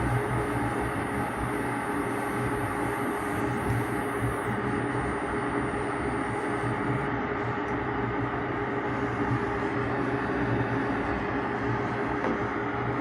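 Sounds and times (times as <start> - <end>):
printer motors humming and whirring: 0.0 - 13.0.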